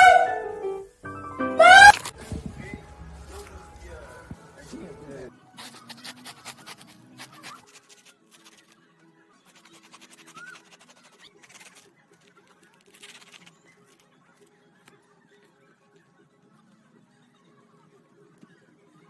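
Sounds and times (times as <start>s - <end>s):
faint background music: 0.0s - 19.0s
rapid clicking or scratching: 5.6s - 8.8s, 9.5s - 11.9s.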